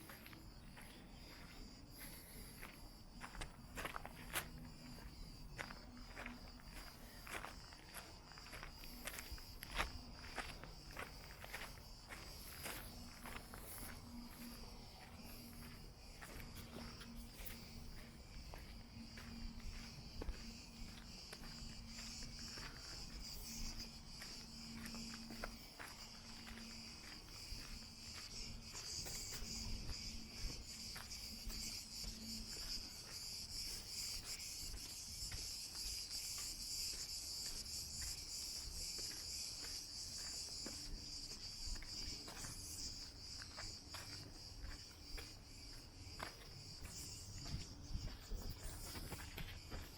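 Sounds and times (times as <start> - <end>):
faint footsteps on a path: 0.0 - 49.9
insects chirping: 0.0 - 49.9.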